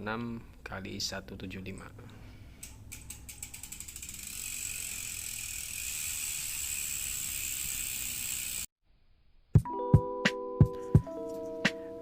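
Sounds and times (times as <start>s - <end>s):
bicycle freehub ratchet buzzing: 2.5s - 8.7s.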